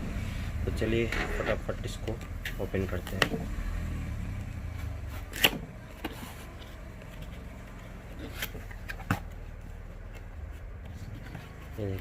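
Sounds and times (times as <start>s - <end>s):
cardboard clicks and rustles: 4.7s - 12.0s.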